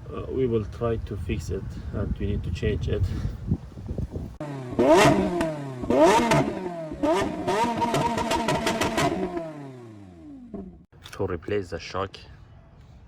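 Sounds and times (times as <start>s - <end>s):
engine revving: 4.4s - 10.9s.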